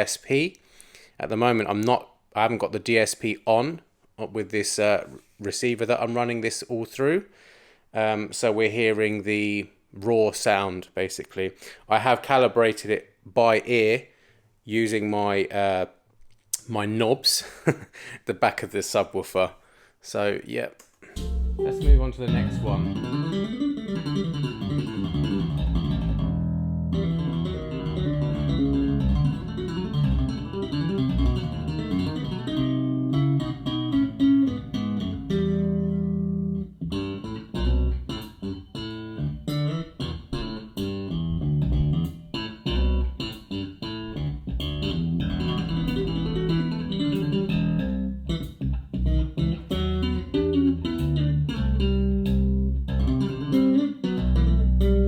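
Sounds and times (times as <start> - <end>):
plucked guitar music with bass: 21.1 - 55.0.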